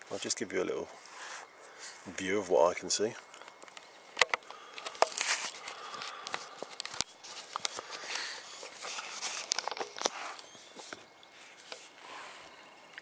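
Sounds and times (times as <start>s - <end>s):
camera handling clicks and knocks: 3.4s - 5.3s.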